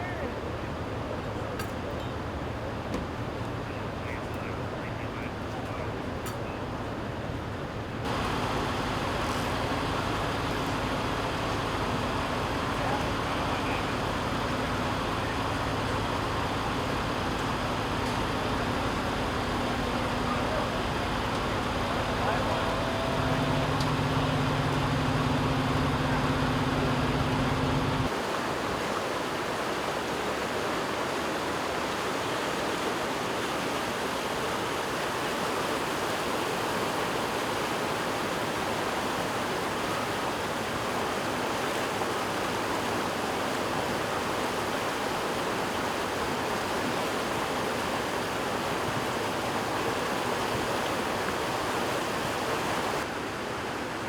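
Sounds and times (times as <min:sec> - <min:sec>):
floodwater rushing: 0:08.0 - 0:54.0
low hum: 0:08.1 - 0:28.1.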